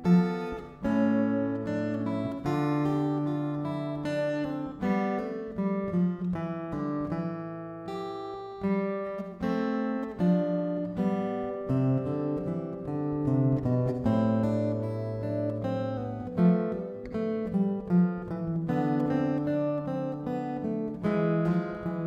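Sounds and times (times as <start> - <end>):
acoustic guitar strumming: 0.0 - 22.0.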